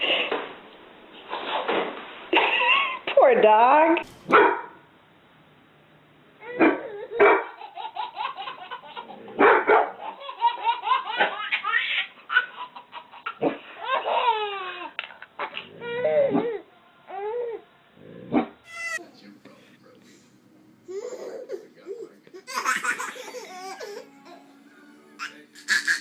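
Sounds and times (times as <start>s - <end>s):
dog barking: 4.3s - 4.8s, 6.6s - 7.6s, 9.4s - 10.0s
small child giggling: 20.9s - 24.0s.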